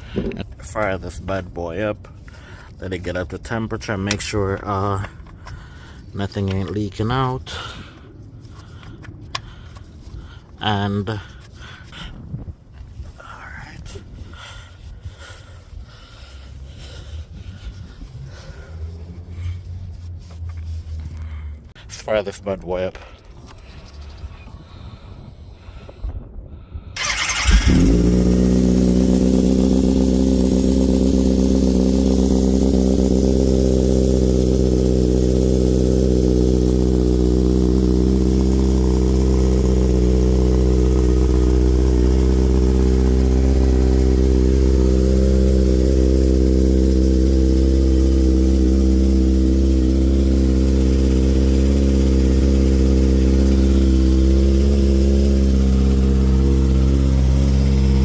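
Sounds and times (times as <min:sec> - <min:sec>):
motorcycle engine starting and idling: 0:27.0 - 0:58.0.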